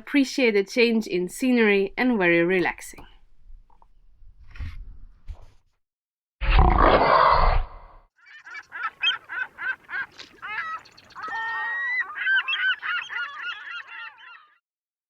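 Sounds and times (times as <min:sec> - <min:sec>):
bird honking: 0:08.2 - 0:14.6.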